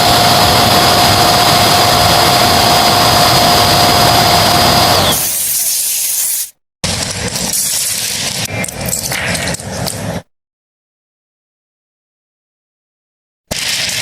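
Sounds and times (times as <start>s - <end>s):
loud rushing noise: 0.0s - 5.4s
power tool motor whining: 0.0s - 5.6s.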